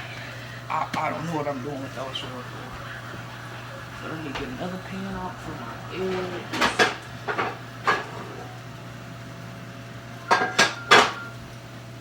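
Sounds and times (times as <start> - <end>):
metal cookware clanking: 4.0 - 8.8, 10.2 - 11.4.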